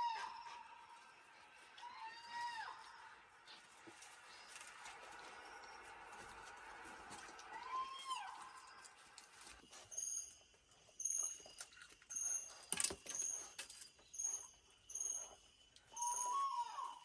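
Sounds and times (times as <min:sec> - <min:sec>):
lower bending animal call: 0:07.4 - 0:08.8.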